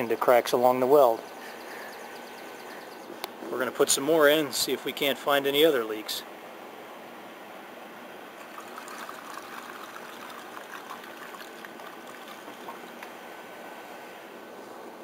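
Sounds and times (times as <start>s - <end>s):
liquid trickling and splashing: 8.4s - 13.2s.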